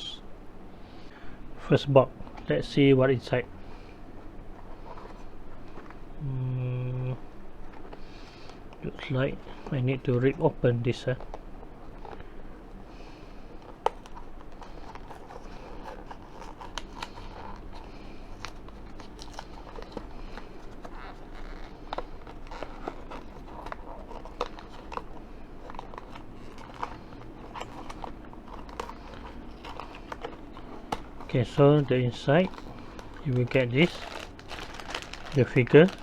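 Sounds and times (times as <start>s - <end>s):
packaging being ripped open: 13.6s - 36.0s.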